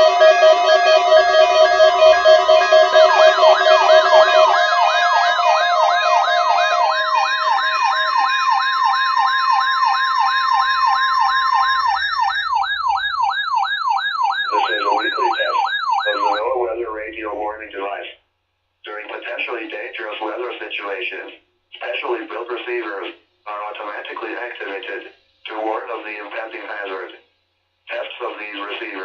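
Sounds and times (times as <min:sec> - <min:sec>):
buzzy data tone bursts: 0:00.0 - 0:08.5
steady music tones: 0:00.0 - 0:09.1, 0:10.4 - 0:18.0
electronic siren yelping: 0:00.0 - 0:17.8.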